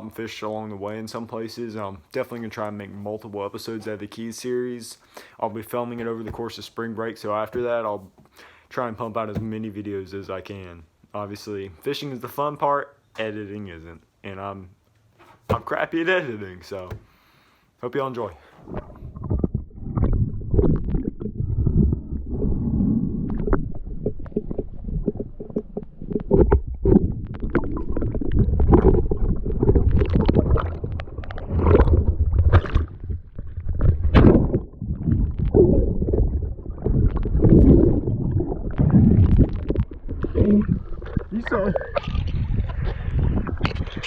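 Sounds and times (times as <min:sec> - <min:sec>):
muffled underwater sloshing: 0:18.5 - 0:44.0.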